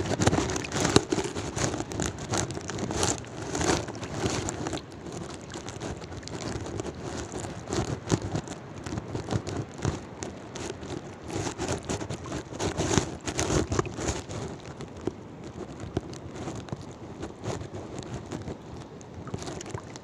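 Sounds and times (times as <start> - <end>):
seawater splashing: 0.0 - 15.9, 18.2 - 20.0.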